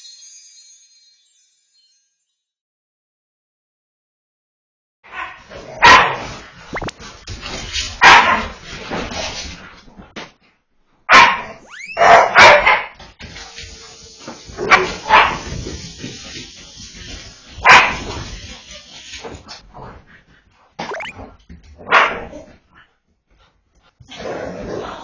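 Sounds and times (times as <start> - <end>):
dogs barking: 11.1 - 12.8.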